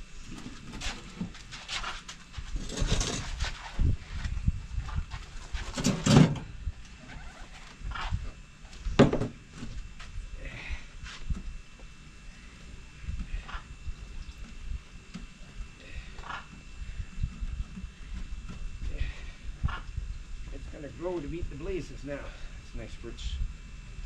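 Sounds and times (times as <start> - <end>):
rustling and scraping: 0.2 - 10.2.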